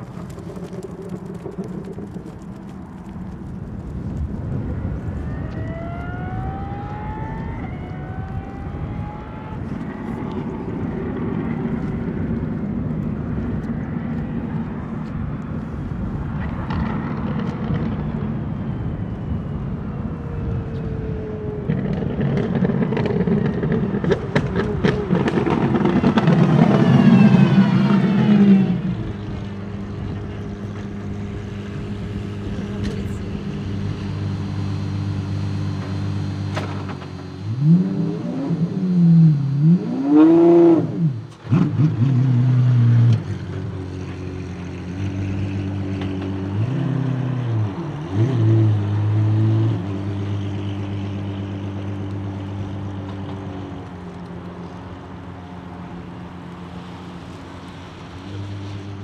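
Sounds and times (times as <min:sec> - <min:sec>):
car engine idling: 0:00.0 - 0:04.3
engine throttle blips: 0:00.0 - 0:59.0.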